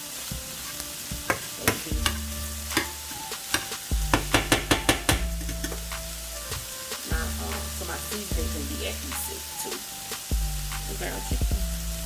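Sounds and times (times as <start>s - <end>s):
food sizzling in a frying pan: 0.0s - 12.0s
utensil stirring and scraping pan: 0.6s - 8.4s.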